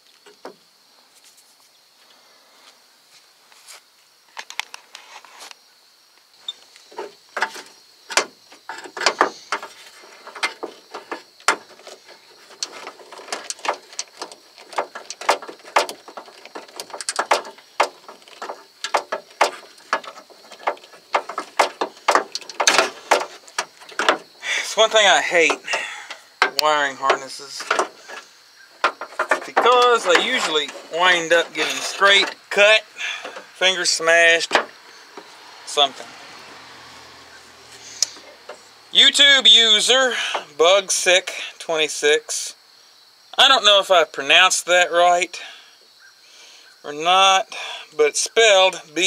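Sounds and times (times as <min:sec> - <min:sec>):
wiring harness crackling: 0:06.4 - 0:36.0.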